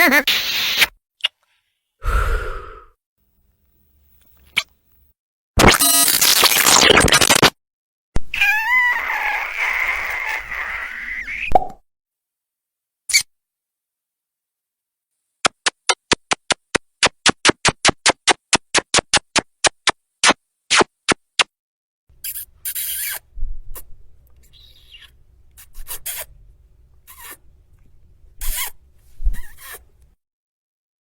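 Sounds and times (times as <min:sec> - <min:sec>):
kissing lip smacks: 0:22.2 - 0:26.3, 0:27.1 - 0:27.4.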